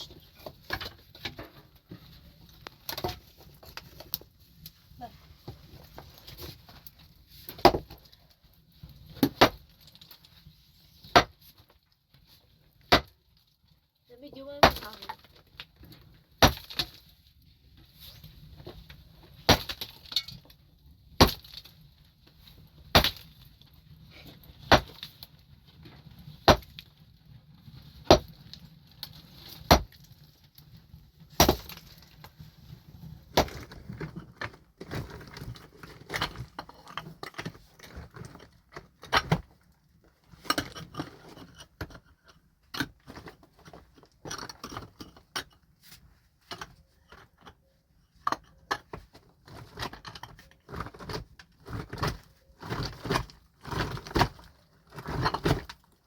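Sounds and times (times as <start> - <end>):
knocks and stones shifting: 0.0 - 10.3, 17.9 - 56.0
pickaxe striking rock: 9.2 - 9.6, 11.0 - 11.4, 12.9 - 13.2, 14.6 - 15.0, 16.4 - 17.0, 19.5 - 20.2, 21.2 - 21.6, 22.9 - 23.3, 24.6 - 25.1, 26.4 - 26.8, 28.1 - 28.4, 29.6 - 30.0, 31.4 - 31.9, 33.3 - 33.8.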